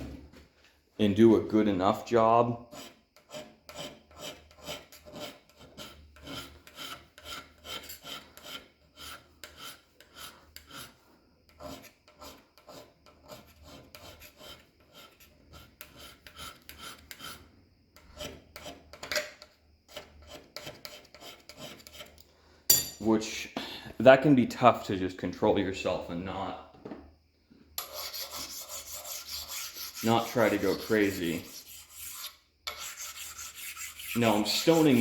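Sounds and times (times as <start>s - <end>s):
hand scraper scraping cast iron: 2.6s - 23.0s, 27.8s - 35.0s.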